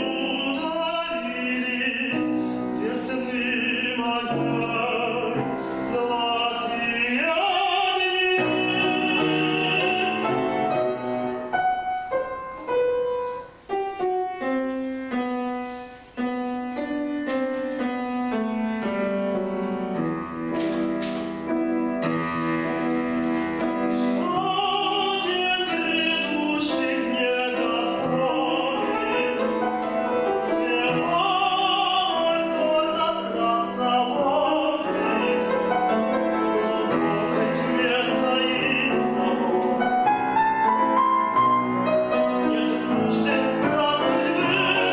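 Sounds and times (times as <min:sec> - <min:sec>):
man singing with vibrato: 0:00.0 - 0:13.3, 0:23.6 - 0:44.9
piano accompaniment: 0:00.0 - 0:44.9.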